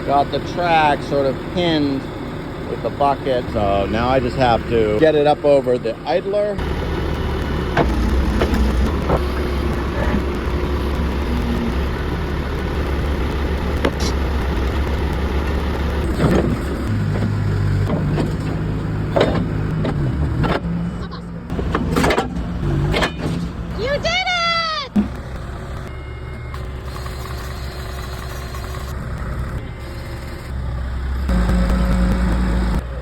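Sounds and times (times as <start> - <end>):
excavator diesel engine: 0.0 - 33.0
metal track knocks and clanks: 16.0 - 20.7, 21.5 - 23.7.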